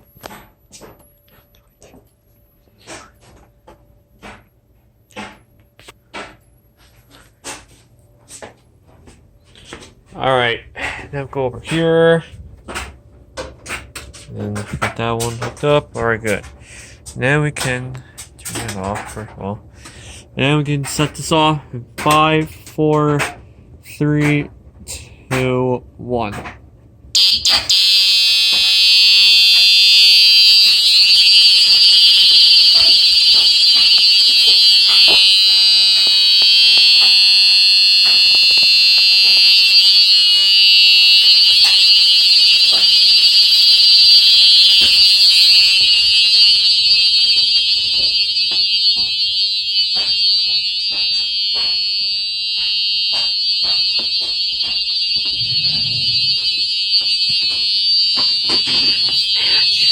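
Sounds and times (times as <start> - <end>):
fire alarm horn tone: 27.2 - 59.9.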